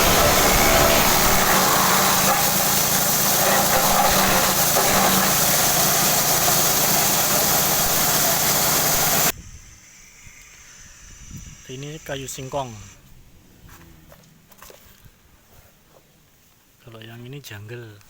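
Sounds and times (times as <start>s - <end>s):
forage chopper running: 0.0s - 9.3s.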